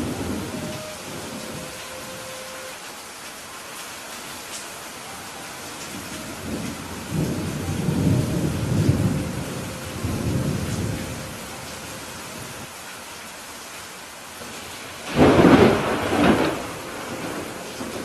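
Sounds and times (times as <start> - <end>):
rolling thunder rumble: 0.0 - 2.0, 5.9 - 12.7, 14.6 - 18.0
steady rain: 0.0 - 18.0.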